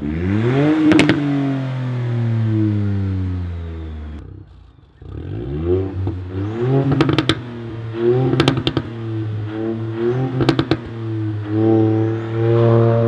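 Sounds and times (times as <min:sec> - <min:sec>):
car engine revving: 0:00.0 - 0:13.0
exhaust pops and crackles: 0:00.8 - 0:01.3, 0:06.0 - 0:11.8.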